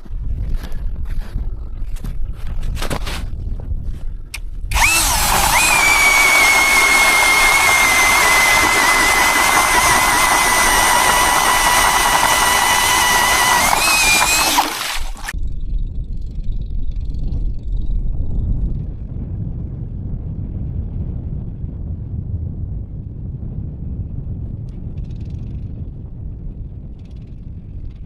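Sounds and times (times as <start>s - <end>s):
cordless drill motor whine: 4.7s - 15.3s.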